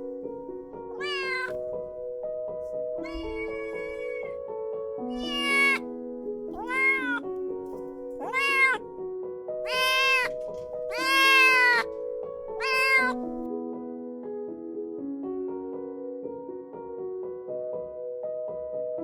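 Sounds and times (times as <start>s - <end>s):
gentle background music: 0.0s - 19.0s
kitten meowing: 0.8s - 2.2s, 3.0s - 4.4s, 5.1s - 9.0s, 9.7s - 11.9s, 12.5s - 13.4s.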